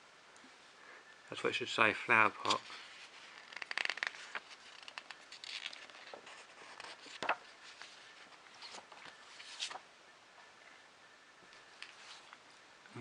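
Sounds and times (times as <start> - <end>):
magazine pages turning: 2.3 - 9.9.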